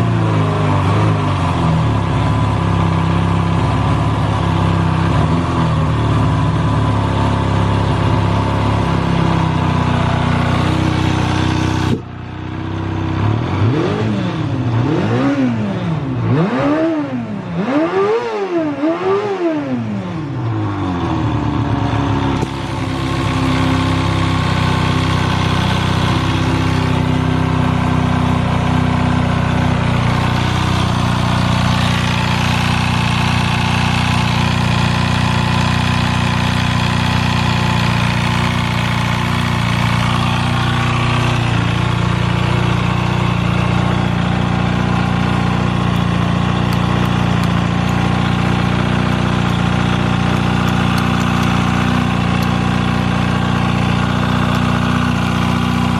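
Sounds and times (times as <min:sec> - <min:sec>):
motorcycle engine idling: 0:00.0 - 0:55.9.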